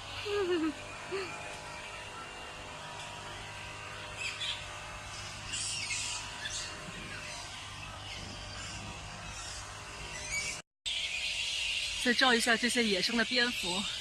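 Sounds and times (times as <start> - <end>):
din of distant bat calls: 0.0 - 14.0.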